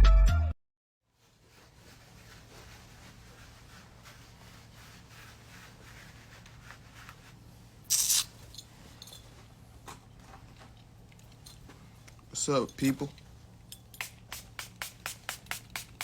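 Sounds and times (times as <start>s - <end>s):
short hiss: 7.9s - 8.4s.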